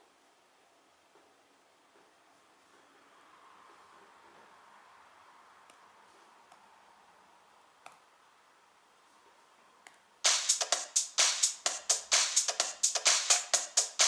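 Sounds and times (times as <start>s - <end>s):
techno drum machine beat: 10.2s - 14.0s.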